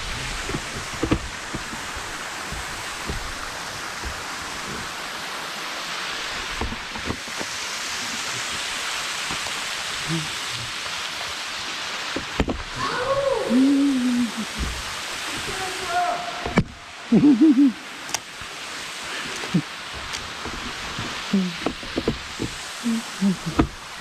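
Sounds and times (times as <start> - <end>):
faint knocks of climbing gear: 0.0 - 5.0, 19.2 - 22.7
waterfall rushing: 0.0 - 24.0.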